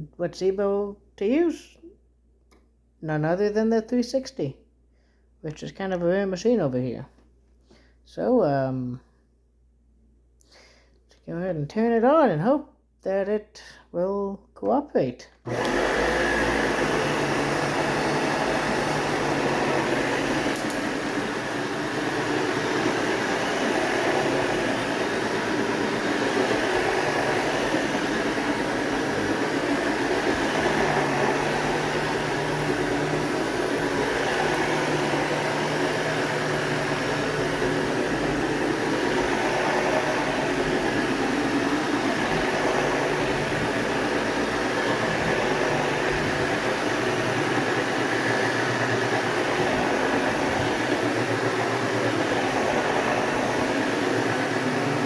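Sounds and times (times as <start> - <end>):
vacuum cleaner on carpet: 15.5 - 55.0.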